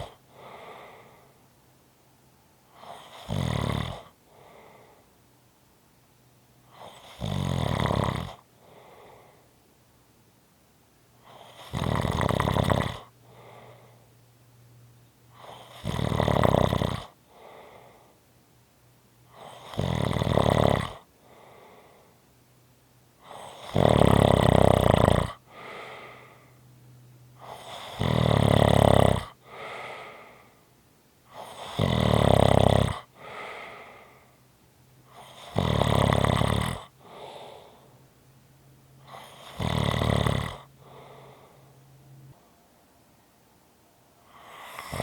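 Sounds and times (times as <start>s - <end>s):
person snoring: 0.0s - 1.3s, 2.7s - 5.0s, 6.7s - 9.4s, 11.2s - 14.0s, 15.4s - 18.1s, 19.3s - 22.1s, 23.2s - 26.5s, 27.4s - 30.6s, 31.3s - 34.3s, 35.1s - 37.9s, 39.0s - 41.6s, 44.2s - 45.0s
faint breath: 0.0s - 1.6s, 4.1s - 5.2s, 8.4s - 9.6s, 13.1s - 14.3s, 17.2s - 18.4s, 21.2s - 22.4s, 25.4s - 28.0s, 29.3s - 31.8s, 33.0s - 35.5s, 36.8s - 38.2s, 40.6s - 42.8s, 44.2s - 45.0s.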